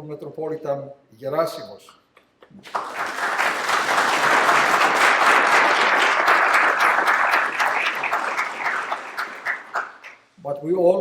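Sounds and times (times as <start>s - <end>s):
audience applauding: 2.6s - 10.2s.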